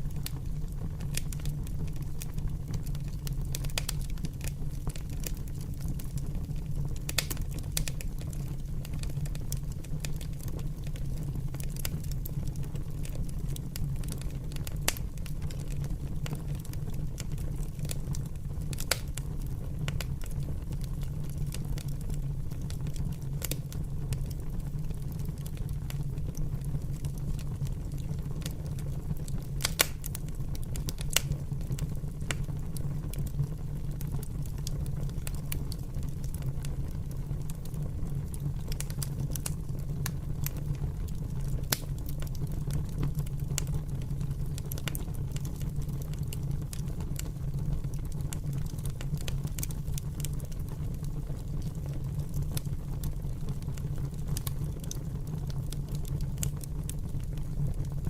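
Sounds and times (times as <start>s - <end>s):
fire crackling and popping: 0.0s - 58.0s.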